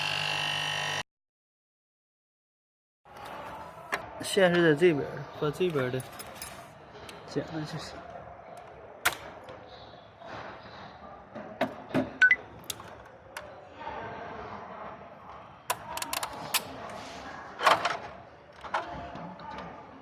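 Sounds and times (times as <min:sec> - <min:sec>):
hand tools clicking and clinking: 0:06.0 - 0:06.7.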